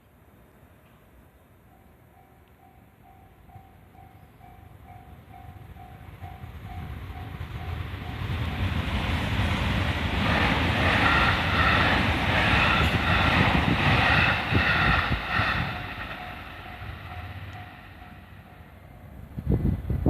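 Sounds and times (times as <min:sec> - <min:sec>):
level crossing warning bell: 0:01.7 - 0:08.9, 0:15.8 - 0:19.3
train running noise: 0:01.9 - 0:20.0
high steady tones: 0:02.2 - 0:19.4.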